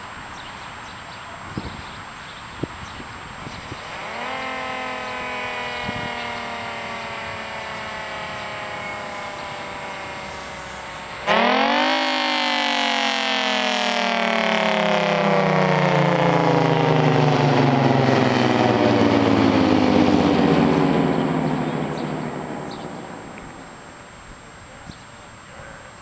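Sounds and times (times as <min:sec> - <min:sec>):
tornado siren winding down: 0:03.2 - 0:24.8.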